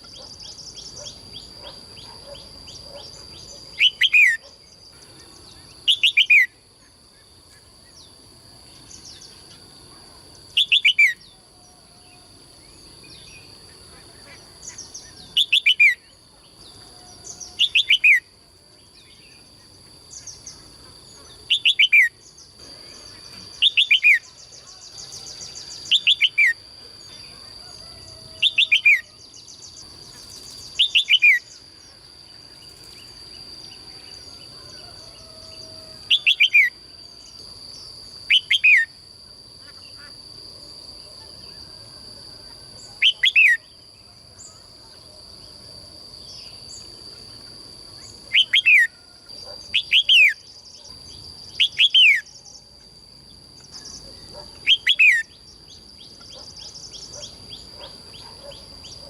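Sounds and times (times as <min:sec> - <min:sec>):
songbird singing whistled notes: 0:00.0 - 0:04.8, 0:05.4 - 0:06.6, 0:10.5 - 0:11.4, 0:14.6 - 0:18.3, 0:21.5 - 0:22.6, 0:23.6 - 0:26.6, 0:27.8 - 0:31.7, 0:32.5 - 0:37.4, 0:38.3 - 0:39.0, 0:42.5 - 0:43.8, 0:48.0 - 0:52.8, 0:53.6 - 0:59.0.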